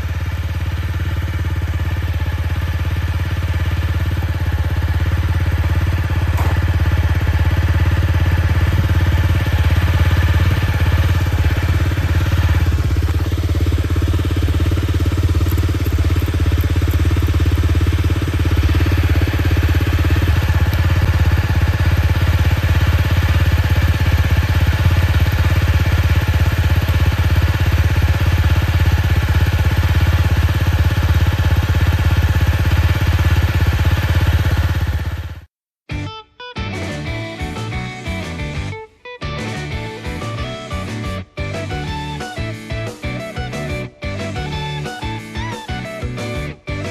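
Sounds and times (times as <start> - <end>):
motorcycle engine idling: 0.0 - 35.5.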